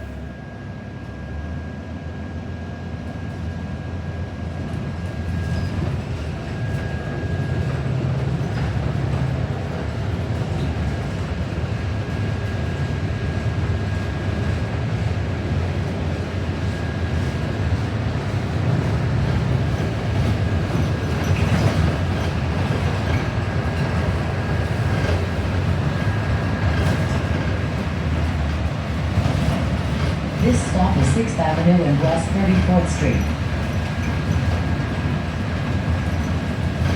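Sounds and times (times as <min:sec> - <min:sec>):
bus engine and road rumble: 0:00.0 - 0:36.9.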